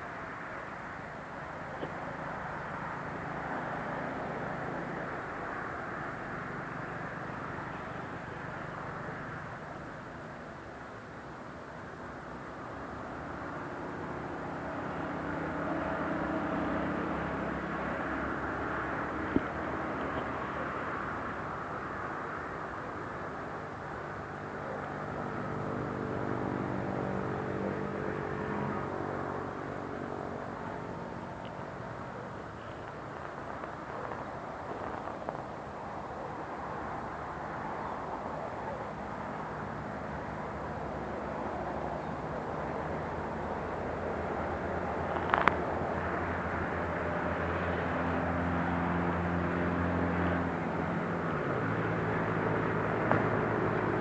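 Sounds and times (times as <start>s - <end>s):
city noise: 0.0s - 54.0s
traffic rumble: 0.0s - 54.0s
engine hum: 11.9s - 54.0s
vehicle engine passing by: 24.2s - 33.5s, 42.6s - 54.0s.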